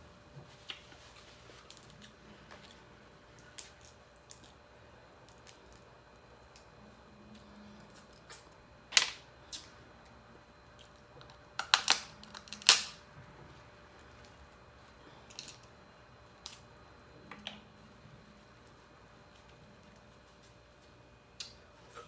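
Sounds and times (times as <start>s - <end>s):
crab shell cracking: 11.6s - 13.0s.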